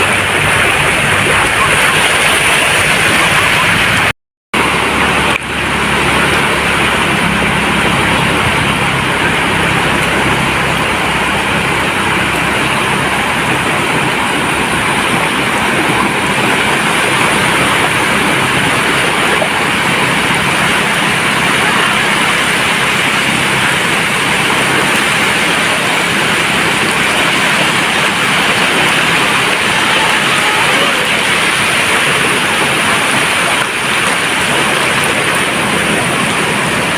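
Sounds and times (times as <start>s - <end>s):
surf washing on a beach: 0.0s - 36.9s.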